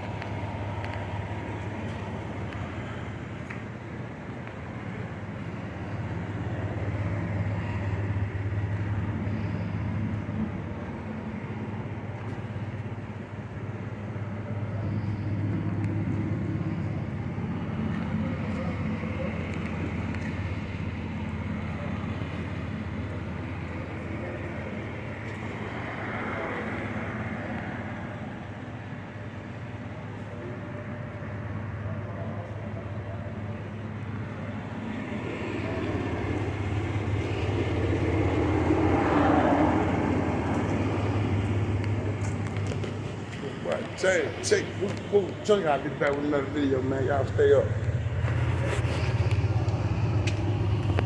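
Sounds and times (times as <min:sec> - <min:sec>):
vehicle engine humming: 0:00.0 - 0:51.0.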